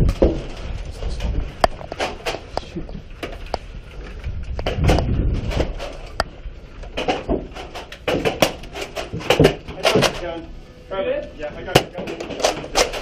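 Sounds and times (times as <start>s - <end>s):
heavier thumping: 4.3s - 10.4s.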